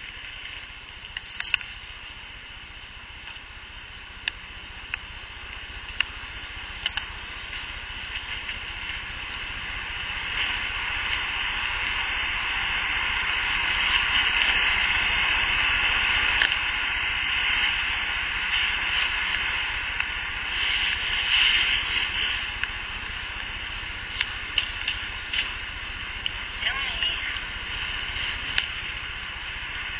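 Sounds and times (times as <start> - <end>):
faint clicks: 0.0 - 1.8, 6.8 - 8.6, 24.1 - 25.6.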